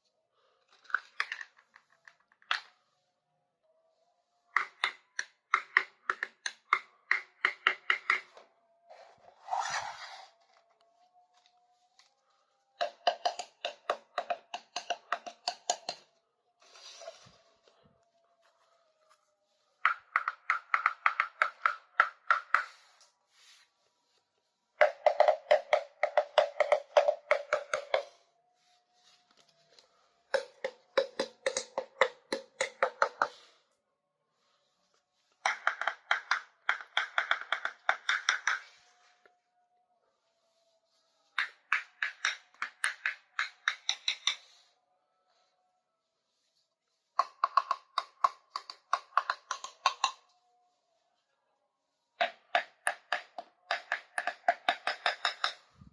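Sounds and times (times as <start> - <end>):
rapid tapping on plastic toys: 4.5 - 8.4, 12.8 - 16.1, 19.8 - 22.8, 24.8 - 28.1, 30.3 - 33.4, 35.4 - 38.7, 41.4 - 44.5, 47.2 - 50.2, 52.2 - 55.7.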